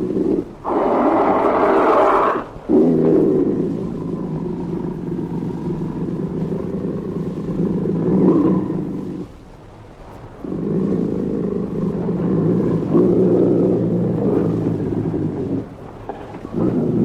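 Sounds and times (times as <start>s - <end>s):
low rumbling roaring drone: 0.0s - 17.0s.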